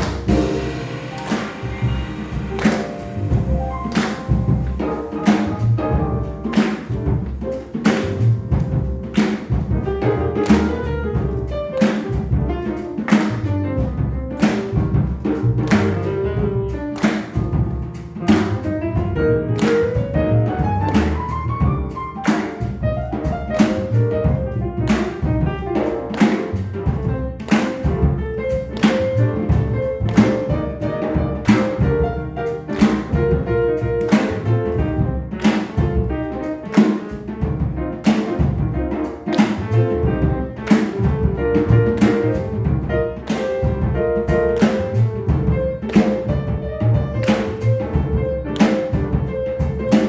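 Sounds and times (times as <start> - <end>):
acoustic piano: 0.0 - 50.0
drum kit with cymbal strokes: 0.0 - 50.0
upright double bass: 0.0 - 50.0.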